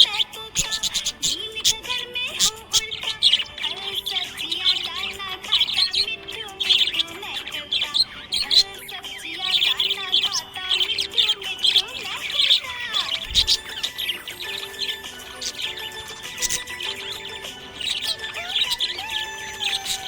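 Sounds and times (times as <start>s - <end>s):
budgerigars chirping and warbling: 0.0s - 20.0s.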